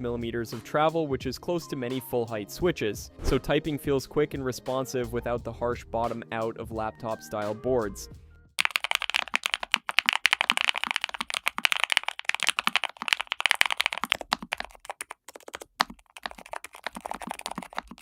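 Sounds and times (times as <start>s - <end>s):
fast keyboard typing: 8.6s - 18.0s.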